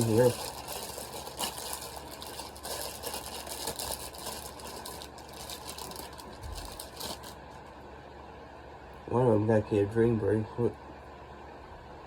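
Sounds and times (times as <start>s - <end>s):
packaging rustling and crinkling: 0.0s - 7.7s
low steady hum: 0.0s - 12.0s.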